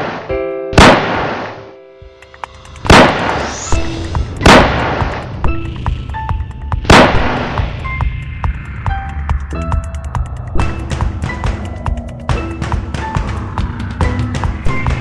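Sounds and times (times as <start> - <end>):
background music: 0.1 - 15.0
gunshot-like blasts: 0.8 - 1.6, 2.9 - 3.7, 4.4 - 5.2, 6.9 - 7.6.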